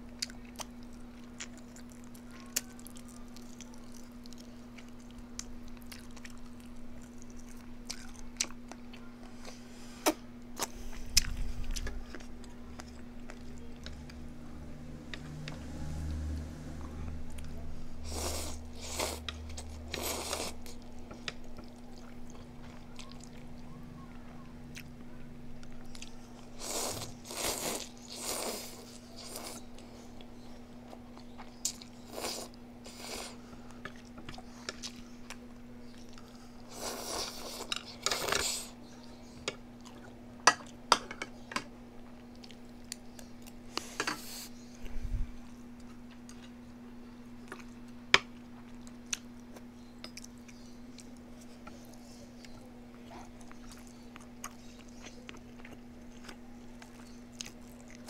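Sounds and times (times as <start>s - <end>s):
food being bitten and chewed: 0.0s - 14.2s, 47.4s - 58.0s
steady low hum: 0.0s - 58.0s.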